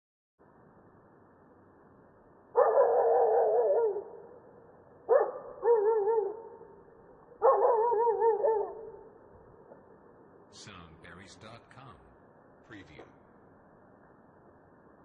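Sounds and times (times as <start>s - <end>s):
dog barking: 2.6s - 4.3s, 5.1s - 6.7s, 7.4s - 9.1s.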